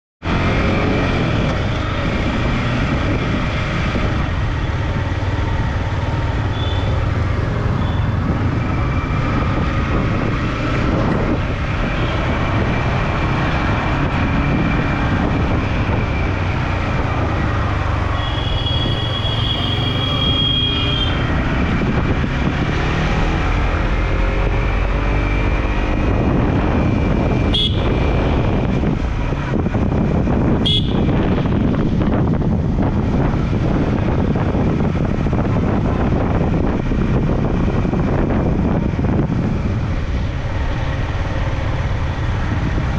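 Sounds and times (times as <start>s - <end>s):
motorcycle engine: 0.2s - 42.9s
road and wind noise: 0.2s - 42.9s
vehicle horn: 6.5s - 7.0s, 18.2s - 21.3s, 27.5s - 28.3s, 30.6s - 31.5s.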